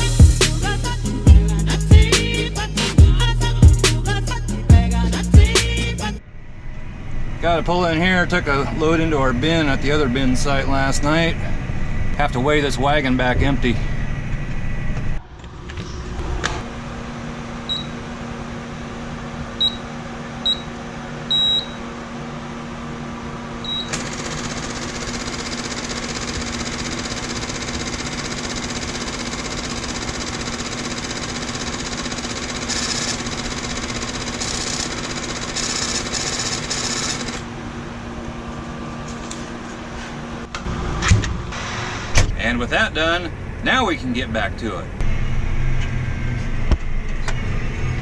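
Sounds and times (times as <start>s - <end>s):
vehicle idling: 0.0s - 6.2s.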